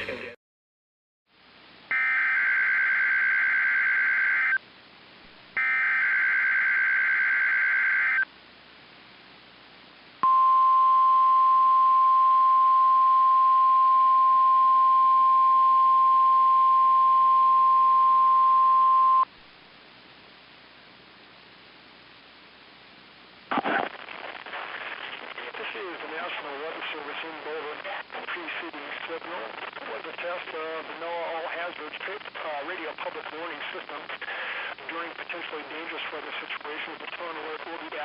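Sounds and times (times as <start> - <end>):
low radio hiss: 1.3 - 38.0
steady warning alarm tone: 1.9 - 4.6.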